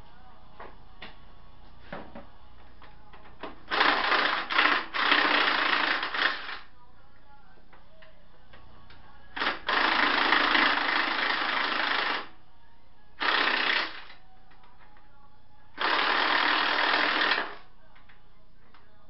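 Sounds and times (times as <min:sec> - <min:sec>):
power tool chattering: 0:03.7 - 0:06.6, 0:13.2 - 0:14.1, 0:15.8 - 0:17.6.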